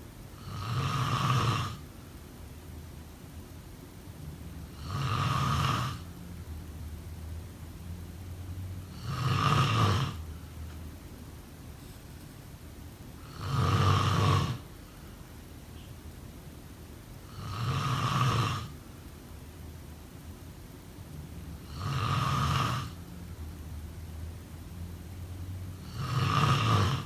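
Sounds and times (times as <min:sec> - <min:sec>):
person snoring: 0:00.4 - 0:01.8, 0:04.8 - 0:06.1, 0:08.9 - 0:10.3, 0:13.2 - 0:14.6, 0:17.3 - 0:18.7, 0:21.6 - 0:23.0, 0:25.8 - 0:27.0
quiet breathing: 0:13.2 - 0:15.4.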